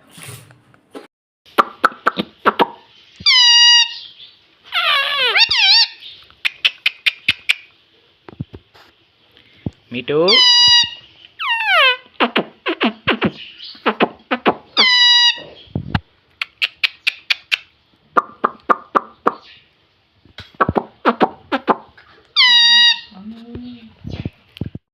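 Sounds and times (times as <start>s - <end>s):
parrot squawking: 2.4s - 7.7s, 10.2s - 15.7s, 21.0s - 23.2s
parrot clicks and chirps: 5.3s - 7.8s, 16.3s - 19.5s
parrot falling whistle: 22.4s - 23.1s.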